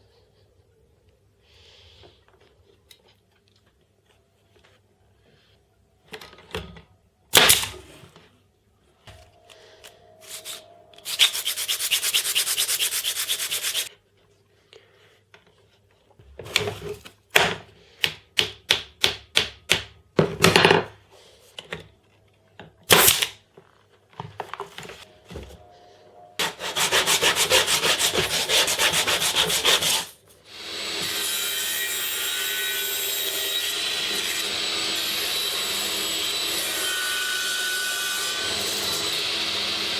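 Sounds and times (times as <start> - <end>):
rubbing or cutting on wood: 10.3 - 13.9, 26.4 - 30.2
short strokes on wood: 10.4 - 13.9.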